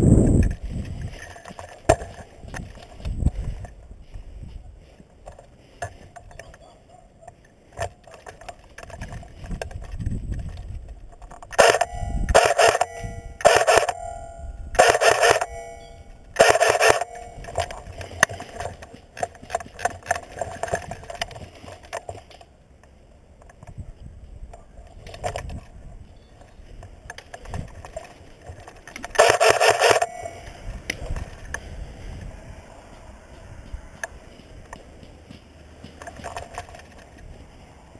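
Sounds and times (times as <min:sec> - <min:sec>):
rustle and thump of movement: 0:00.2 - 0:11.6.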